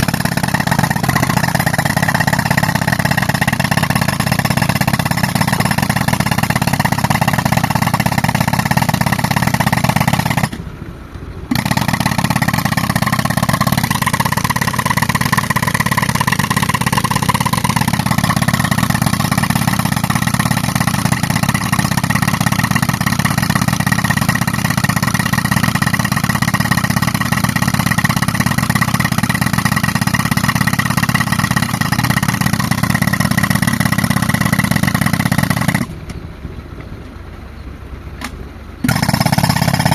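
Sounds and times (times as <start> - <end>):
pneumatic rock breaker: 0.0 - 10.8, 11.5 - 36.2, 38.2 - 39.9
air compressor running: 0.0 - 36.2, 38.8 - 39.9.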